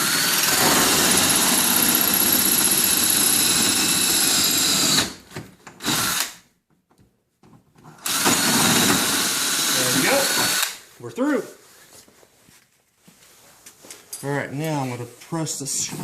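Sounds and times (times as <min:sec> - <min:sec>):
electric drill with hole saw: 0:00.0 - 0:05.2, 0:05.8 - 0:06.4, 0:08.0 - 0:10.8.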